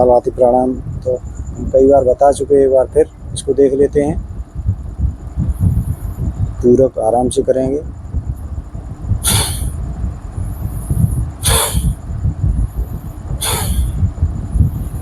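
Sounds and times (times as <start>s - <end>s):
low rumble: 0.0s - 15.0s
forceful nasal exhalations: 9.2s - 9.8s, 10.6s - 12.0s, 13.0s - 14.1s
gentle inhale: 9.2s - 9.8s, 10.4s - 12.0s, 12.8s - 15.0s.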